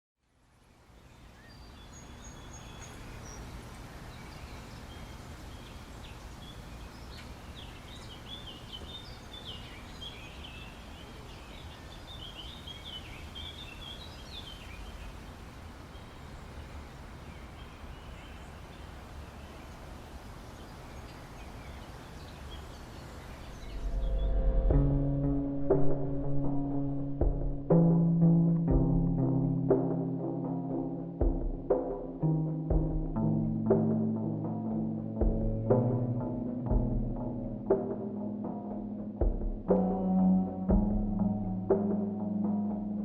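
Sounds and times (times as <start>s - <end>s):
bird chirping: 1.0s - 26.5s
low rumble: 23.4s - 29.8s.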